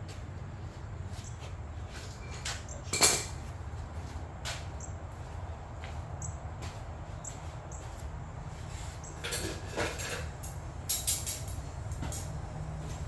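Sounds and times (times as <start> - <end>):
tools clattering: 2.9 - 3.4, 9.2 - 13.0
metal parts clicking and scraping: 9.2 - 12.4.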